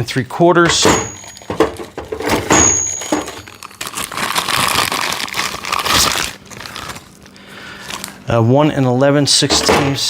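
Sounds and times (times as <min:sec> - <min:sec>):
packaging crinkling and tearing: 0:03.3 - 0:08.2.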